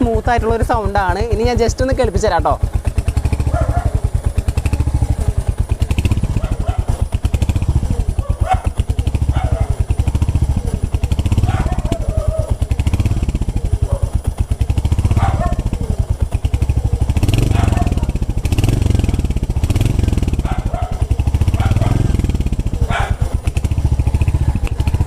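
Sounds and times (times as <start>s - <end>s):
motorcycle engine idling: 0.0s - 25.0s.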